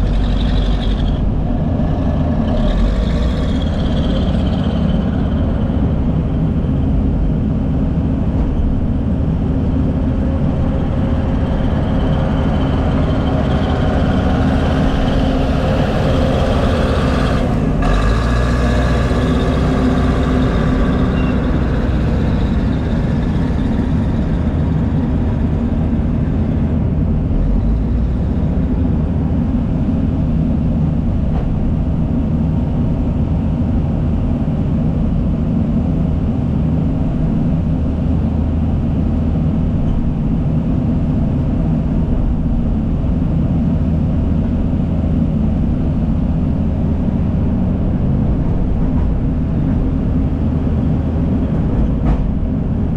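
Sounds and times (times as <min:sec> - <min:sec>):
heavy diesel machinery running: 0:00.0 - 0:52.9.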